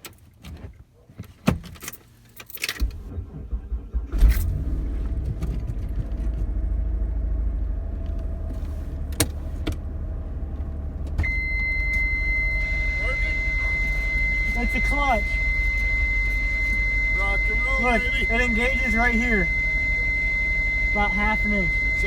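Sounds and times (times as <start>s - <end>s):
keys jangling: 1.7s - 2.8s
car engine starting and idling: 2.2s - 22.0s
high electronic beep: 11.2s - 22.0s.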